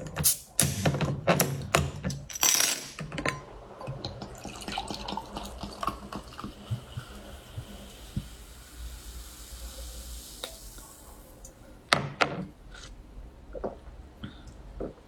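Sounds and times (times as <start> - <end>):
juice splashing and dripping: 3.9 - 11.6.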